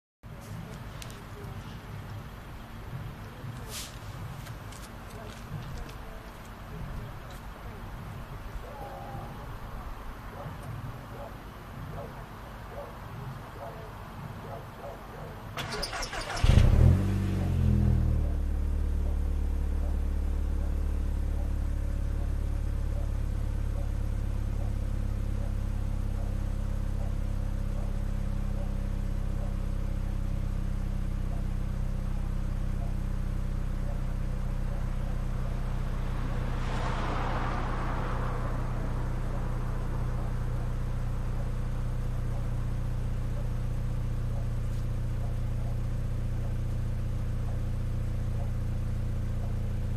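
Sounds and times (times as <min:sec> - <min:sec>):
car engine starting and idling: 0:15.5 - 0:49.9.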